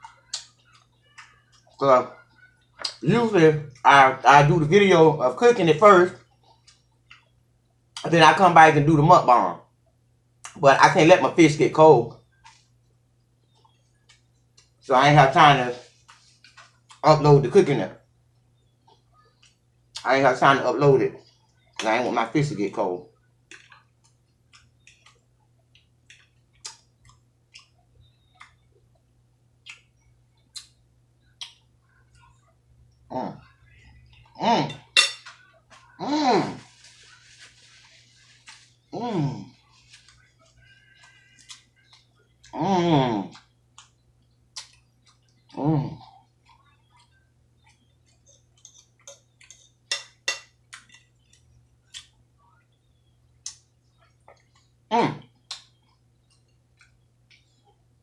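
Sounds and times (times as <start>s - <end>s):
chewing clicks and smacks: 0.0s - 1.8s, 23.5s - 32.3s, 43.3s - 45.6s, 46.4s - 49.9s, 50.6s - 52.2s, 53.4s - 54.7s, 55.4s - 57.8s
low steady hum: 0.0s - 58.0s
wet chewing smacks: 43.3s - 45.6s.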